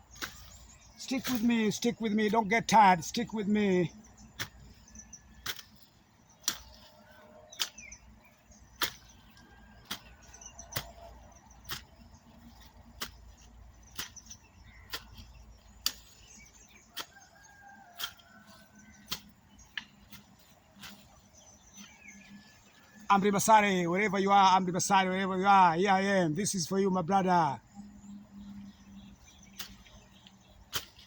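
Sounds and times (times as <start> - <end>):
birds chirping faintly: 0.0 - 31.0
hand tool striking: 5.4 - 7.0, 7.6 - 7.9, 8.8 - 17.1, 17.9 - 21.1, 30.7 - 31.0.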